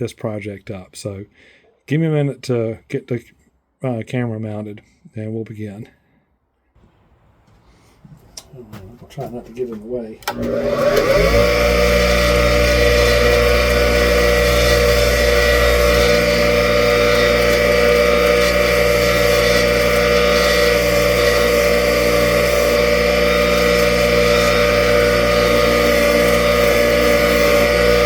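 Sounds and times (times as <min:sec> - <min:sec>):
bench grinder motor whine: 0:10.2 - 0:28.0.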